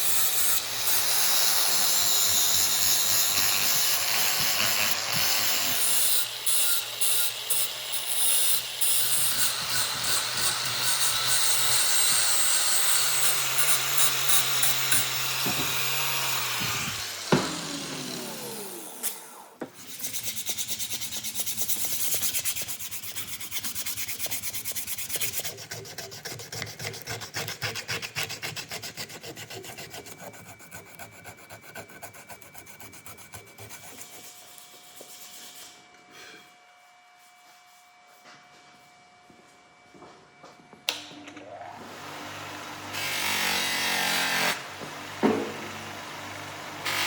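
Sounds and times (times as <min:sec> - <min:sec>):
power tool spinning down: 0:08.4 - 0:19.6
rasp strokes on wood: 0:19.8 - 0:35.8.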